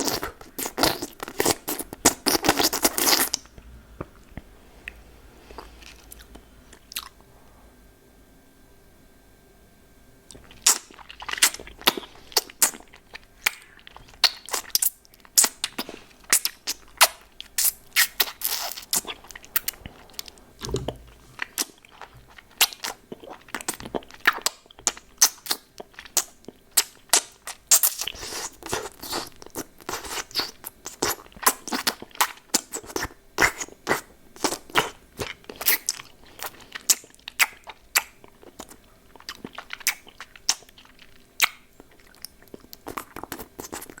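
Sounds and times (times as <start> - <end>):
lollipop crunching in mouth: 0.0 - 3.5, 10.3 - 44.0.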